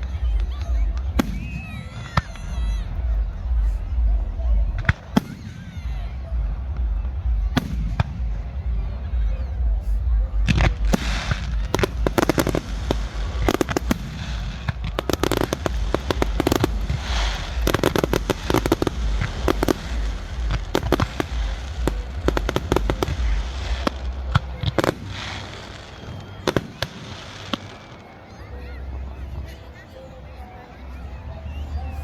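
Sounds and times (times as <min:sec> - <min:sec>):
low rumble: 0:05.8 - 0:25.5
fireworks cracking and popping: 0:10.5 - 0:28.1.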